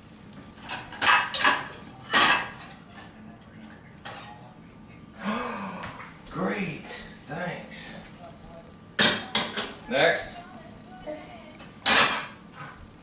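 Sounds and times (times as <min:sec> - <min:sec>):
plates clattering: 0:00.6 - 0:04.4, 0:09.0 - 0:09.8, 0:11.6 - 0:12.4.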